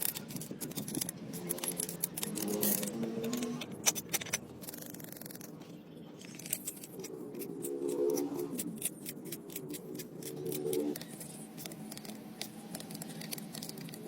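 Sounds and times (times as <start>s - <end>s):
clicks and scraping on engine parts: 0.0s - 14.0s
low-pitched hum: 0.8s - 14.0s.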